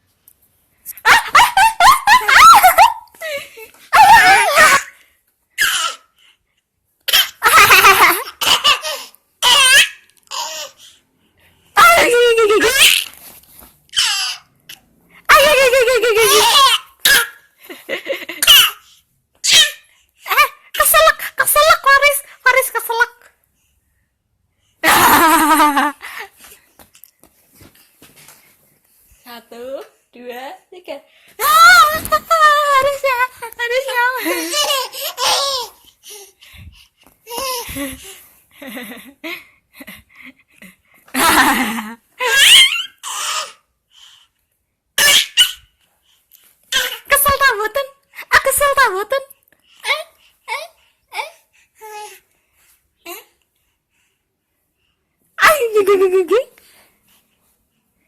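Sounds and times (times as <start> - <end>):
baby coughing: 7.1 - 7.4, 8.4 - 9.8
baby laughing: 7.1 - 10.8, 11.8 - 13.2, 13.9 - 14.5, 15.3 - 20.6, 34.2 - 36.2, 41.2 - 43.6.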